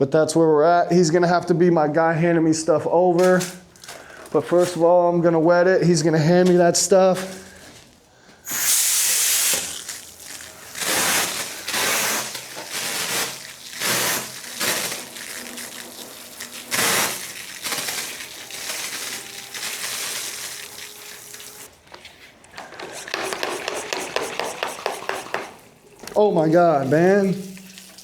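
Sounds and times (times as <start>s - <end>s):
pressure washer spray bursts: 8.5s - 21.7s.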